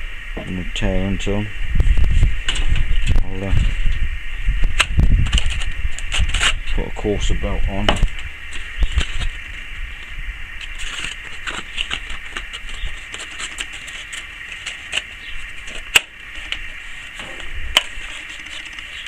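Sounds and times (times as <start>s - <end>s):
clicks and rustles of hands: 10.6s - 19.0s.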